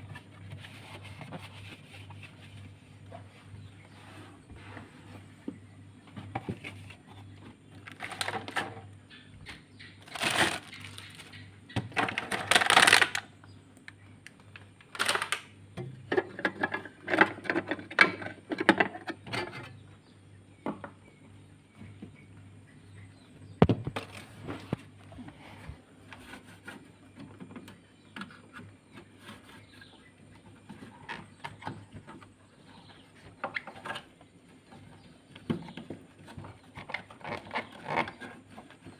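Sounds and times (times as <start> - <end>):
rubbing and scraping handling noise: 0.0 - 13.2, 23.8 - 38.9.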